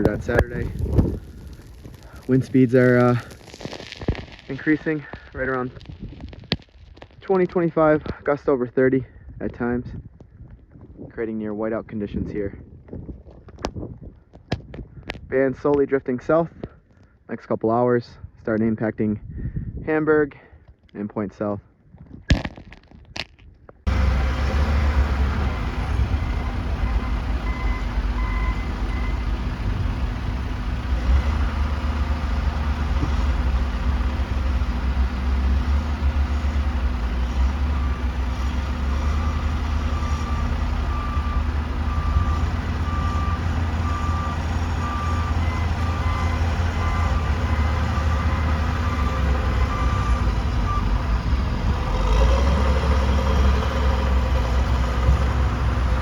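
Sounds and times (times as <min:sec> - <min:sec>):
heavy vehicle engine rumbling: 0:00.0 - 0:06.4, 0:23.8 - 0:56.0
backup alarm beeping: 0:25.4 - 0:29.4.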